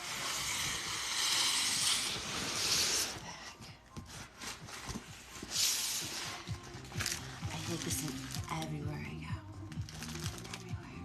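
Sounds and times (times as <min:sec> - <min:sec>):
fabric bag rustling: 0:04.1 - 0:08.8, 0:09.8 - 0:10.8.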